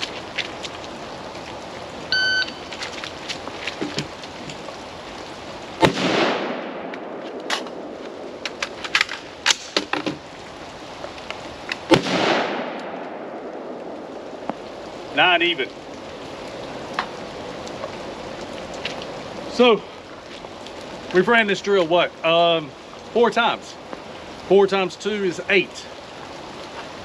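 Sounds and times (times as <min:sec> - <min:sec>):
rain hiss: 0:00.0 - 0:27.0
shot timer beep: 0:02.2 - 0:02.6
rifle shot: 0:05.8 - 0:07.8, 0:11.9 - 0:13.3.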